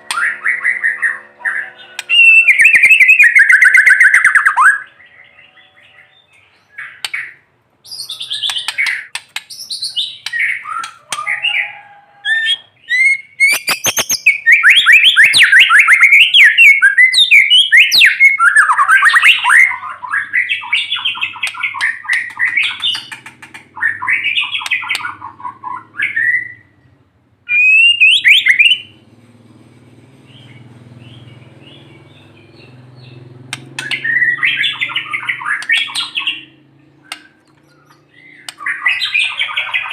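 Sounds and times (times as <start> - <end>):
bird singing whistles and chattering: 0.0 - 11.6, 12.3 - 26.6, 27.5 - 28.9, 30.4 - 39.9
sharp clicks: 8.4 - 9.6, 13.4 - 14.2, 33.4 - 34.0, 37.0 - 37.7, 38.4 - 38.6
faint low hum: 28.5 - 39.9.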